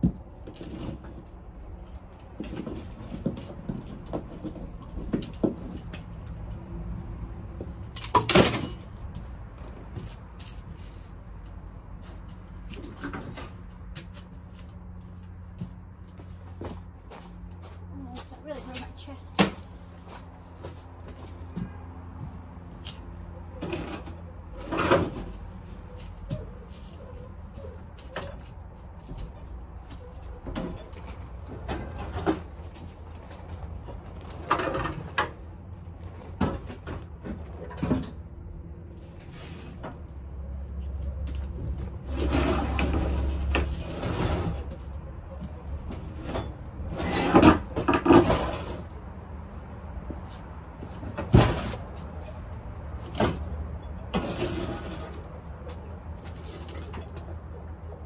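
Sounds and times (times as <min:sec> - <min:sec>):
heavy equipment scraping: 0:41.9 - 0:45.0, 0:46.0 - 0:49.1, 0:54.0 - 0:55.5.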